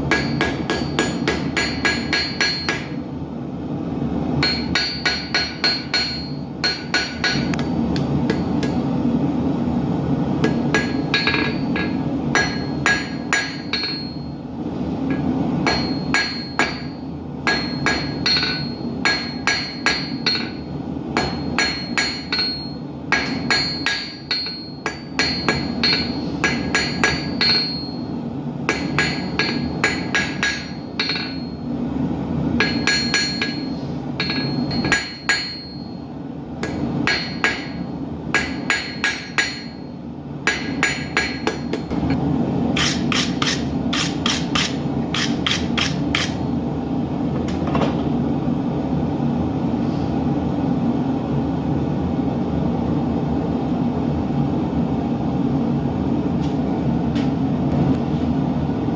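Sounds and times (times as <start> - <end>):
hammer striking steel on anvil: 0.0 - 3.0, 4.4 - 8.9, 10.4 - 14.4, 15.1 - 28.1, 28.7 - 31.7, 32.6 - 36.0, 36.6 - 42.2, 42.8 - 46.5.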